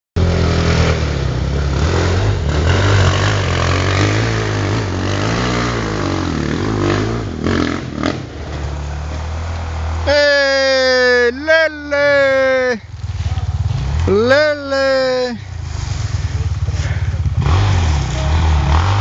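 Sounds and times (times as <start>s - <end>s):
motorcycle engine revving: 0.2s - 10.1s, 12.1s - 19.0s.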